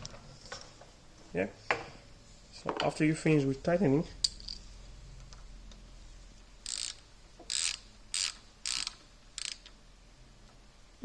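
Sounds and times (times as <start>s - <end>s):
ratchet rasps: 6.6s - 9.8s.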